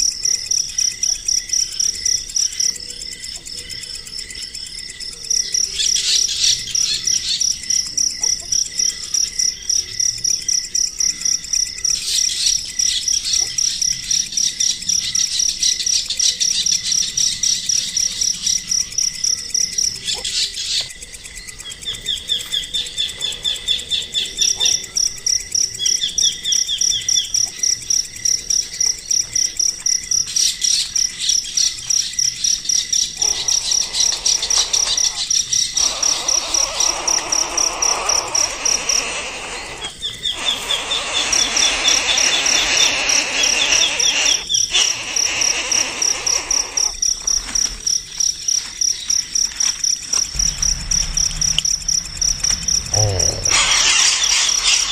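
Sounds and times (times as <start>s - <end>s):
insects chirring: 0.0s - 54.9s
bird chirps and trill: 52.6s - 54.9s.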